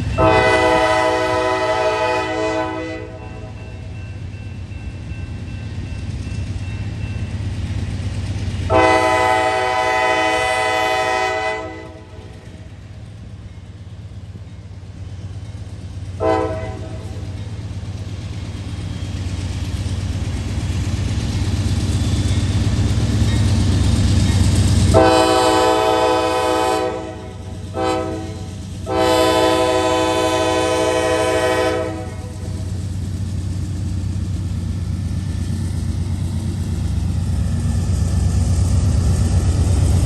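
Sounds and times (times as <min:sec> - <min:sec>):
diesel locomotive engine rumble: 0:00.0 - 0:40.0
train air horn blasts: 0:00.2 - 0:03.6, 0:08.7 - 0:12.3, 0:16.2 - 0:17.2, 0:24.9 - 0:32.5.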